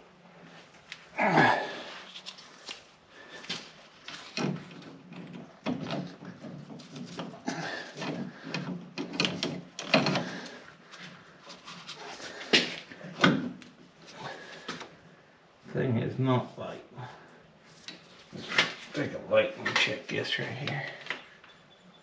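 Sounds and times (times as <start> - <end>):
heavy metal parts clunking: 4.0 - 10.8.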